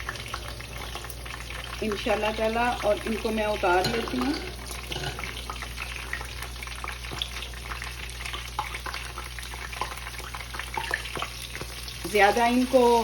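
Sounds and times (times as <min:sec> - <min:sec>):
chillies sizzling in hot oil: 0:00.0 - 0:13.0.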